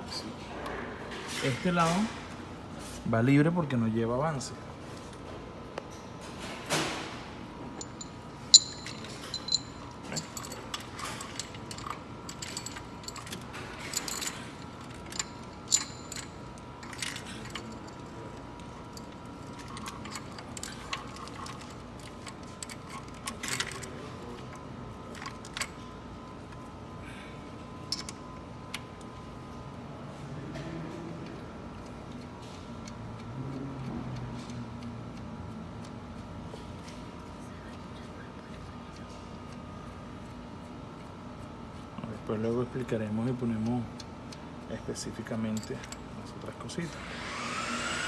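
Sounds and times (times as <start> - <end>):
metal parts clinking: 7.8 - 23.9.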